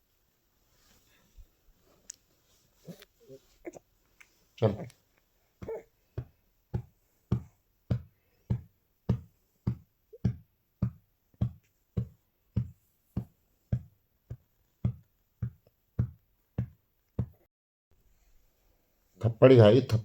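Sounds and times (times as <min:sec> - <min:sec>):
drum machine kick thumps: 0:05.6 - 0:17.5.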